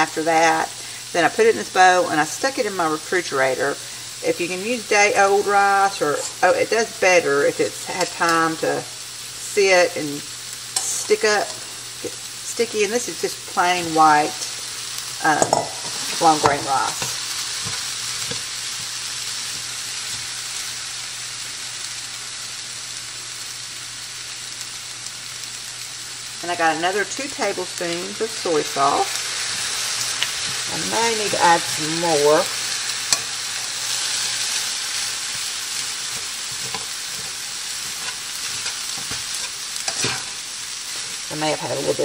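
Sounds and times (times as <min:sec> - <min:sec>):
rice sizzling in a hot pan: 0:00.0 - 0:42.0
spatula scraping and clicking: 0:35.3 - 0:41.2.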